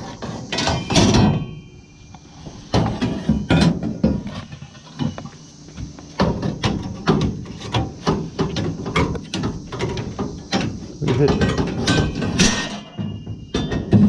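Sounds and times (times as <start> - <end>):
scrap metal clanking: 0.0 - 1.7, 6.3 - 14.0
metallic ring: 0.5 - 2.0, 11.9 - 14.0.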